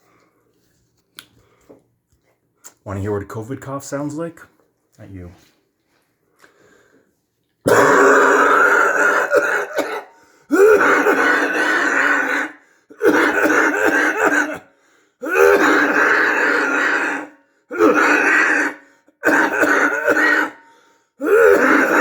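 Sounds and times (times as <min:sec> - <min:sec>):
person clearing throat: 0:07.7 - 0:20.6, 0:21.2 - 0:22.0
person coughing: 0:08.9 - 0:20.6, 0:21.2 - 0:22.0.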